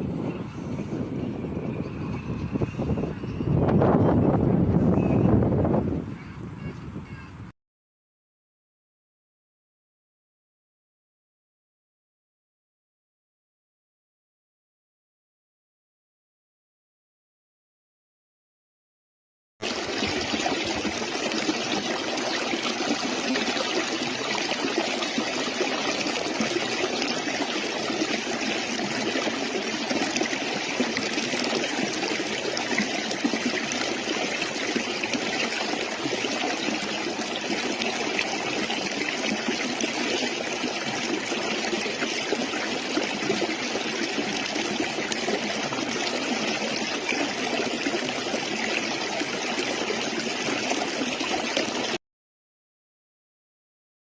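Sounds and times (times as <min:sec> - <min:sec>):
stream water trickling: 0:19.6 - 0:52.0.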